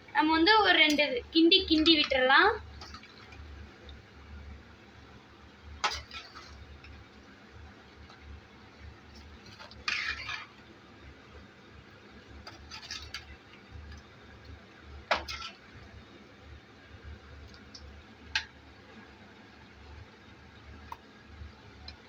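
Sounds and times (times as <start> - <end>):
metal spoon stirring in pot: 0.8 - 4.0, 5.6 - 11.1, 12.2 - 16.0.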